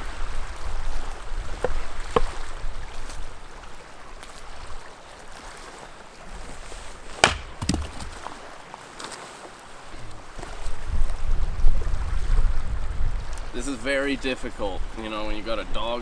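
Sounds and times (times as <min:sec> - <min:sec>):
axe chopping firewood: 0:07.1 - 0:08.4.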